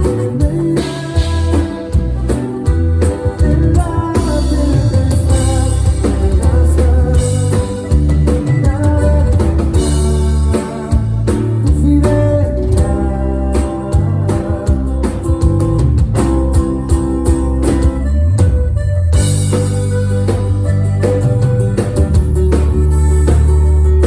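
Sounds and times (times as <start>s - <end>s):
person singing: 0.0s - 2.5s, 3.2s - 17.8s
drum kit: 0.0s - 24.0s
guitar: 0.0s - 24.0s
heavy bass line: 0.0s - 24.0s.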